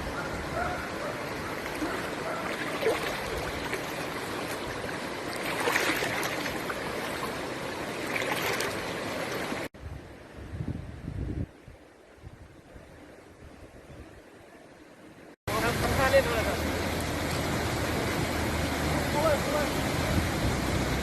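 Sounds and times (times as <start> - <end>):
floodwater rushing: 0.0 - 9.7, 15.5 - 21.0.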